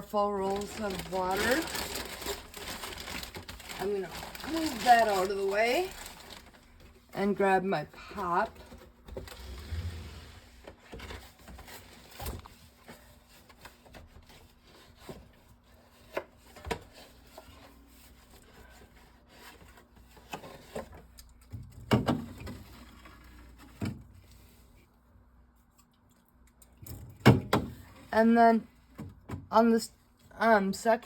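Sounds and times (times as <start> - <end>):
packaging rubbing and rustling: 0.2 - 7.2.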